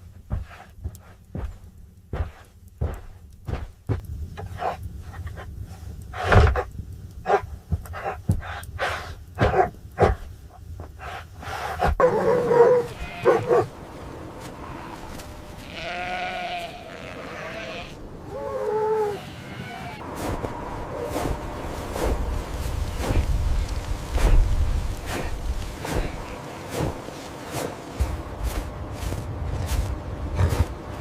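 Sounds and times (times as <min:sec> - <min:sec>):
livestock bleating: 0:12.8 - 0:13.5, 0:14.6 - 0:18.0, 0:19.1 - 0:20.0.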